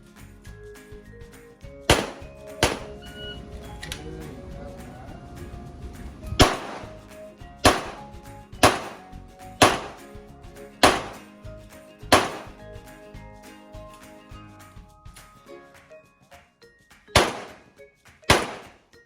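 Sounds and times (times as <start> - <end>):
background music: 0.0 - 19.0
handgun shots: 1.9 - 3.1, 6.4 - 7.0, 7.6 - 8.0, 8.6 - 10.1, 10.8 - 11.3, 12.1 - 12.6, 17.2 - 17.7, 18.3 - 18.8.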